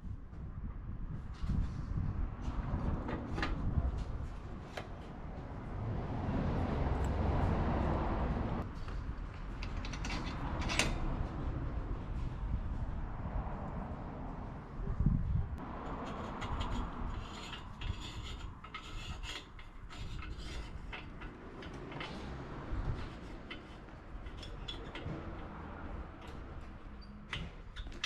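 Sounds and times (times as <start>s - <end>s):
rubbing and scraping: 15.6s - 28.0s.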